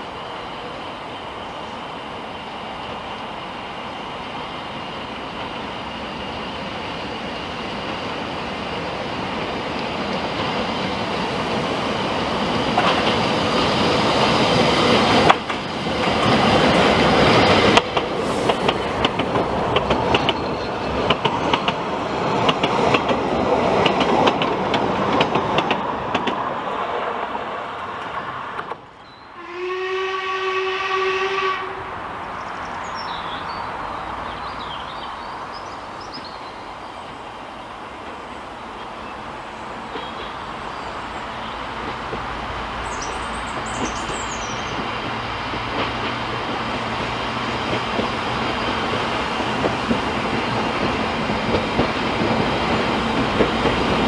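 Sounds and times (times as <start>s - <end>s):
train wheels clicking over rail joints: 12.5s - 29.0s, 41.6s - 54.0s
train horn blast: 29.4s - 32.0s.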